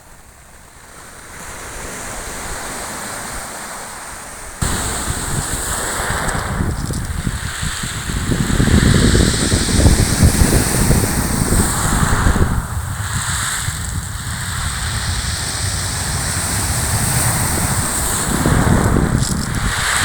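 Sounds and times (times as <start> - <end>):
sea surf on shore: 0.0 - 20.0
wind buffeting microphone: 4.5 - 20.0.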